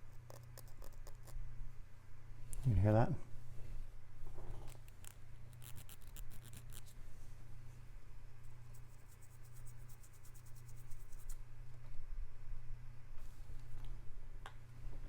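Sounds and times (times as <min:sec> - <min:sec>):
steady low hum: 0:00.0 - 0:15.0
cleaning pen scratching: 0:05.0 - 0:07.0.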